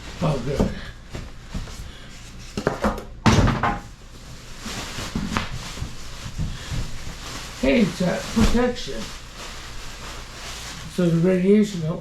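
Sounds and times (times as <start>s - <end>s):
cardboard rustling and scraping: 4.1s - 11.7s.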